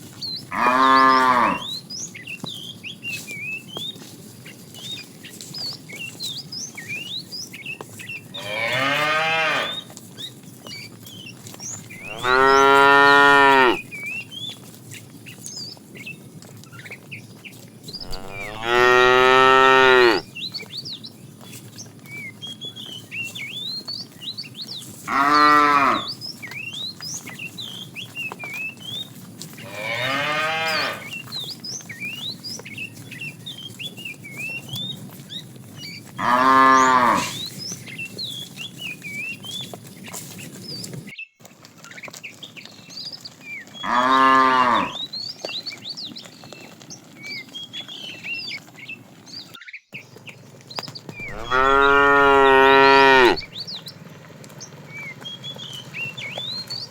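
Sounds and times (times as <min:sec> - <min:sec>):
cattle mooing: 0:00.5 - 0:01.7, 0:08.4 - 0:09.8, 0:12.0 - 0:13.8, 0:17.9 - 0:20.2, 0:25.1 - 0:26.1, 0:29.7 - 0:31.1, 0:36.2 - 0:37.4, 0:43.8 - 0:45.0, 0:51.2 - 0:53.5.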